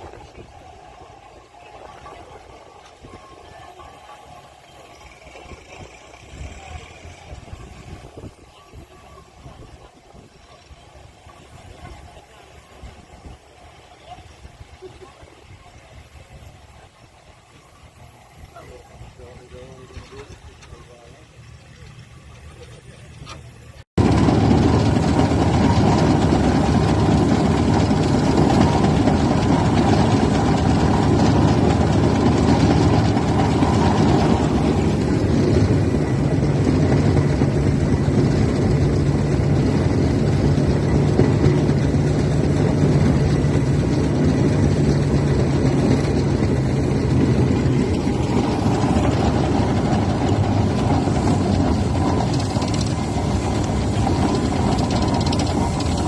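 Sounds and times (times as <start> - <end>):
steam engine running: 0.0 - 14.8, 15.4 - 56.0.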